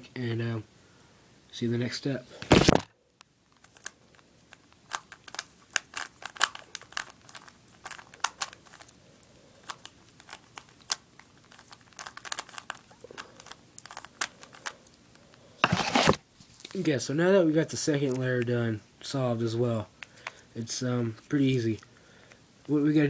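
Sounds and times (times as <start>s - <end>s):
puzzle cube clicking and rattling: 3.6s - 9.0s, 9.6s - 15.0s.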